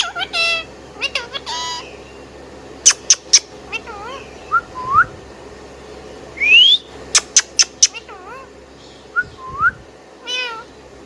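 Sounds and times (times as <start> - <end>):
parakeet chirping: 0.0 - 2.2, 2.8 - 4.8, 6.4 - 8.5
parakeet whistling: 2.8 - 5.1, 6.4 - 8.1.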